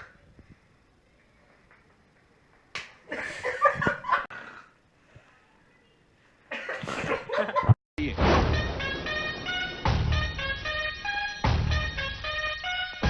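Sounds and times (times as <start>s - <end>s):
sharp hand slap: 2.7s - 3.0s.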